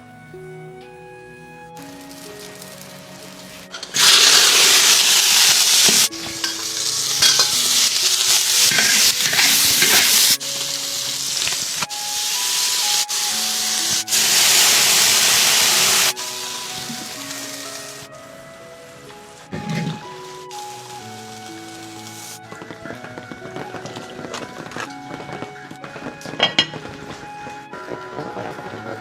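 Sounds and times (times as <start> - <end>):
food sizzling in a hot pan: 1.8 - 18.1, 20.5 - 22.4.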